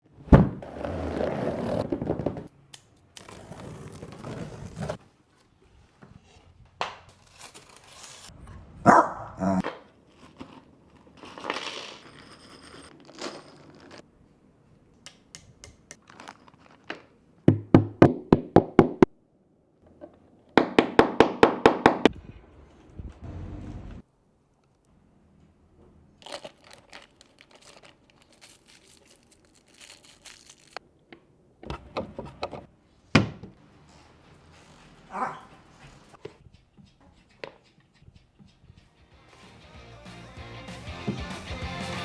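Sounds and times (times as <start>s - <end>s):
packaging crinkling and rustling: 7.1s - 8.3s, 16.0s - 17.1s, 26.2s - 30.8s.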